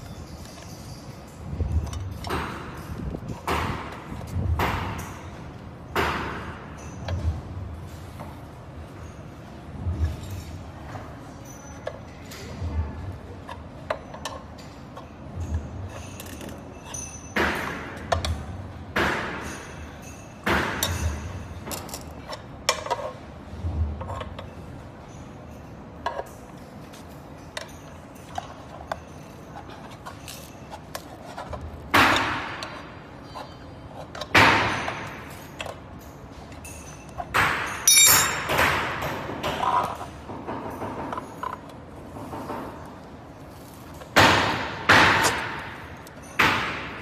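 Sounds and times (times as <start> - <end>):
small tools clicking and clinking: 0.0 - 3.5, 13.5 - 18.4, 19.4 - 23.1, 24.1 - 31.7, 35.0 - 38.6.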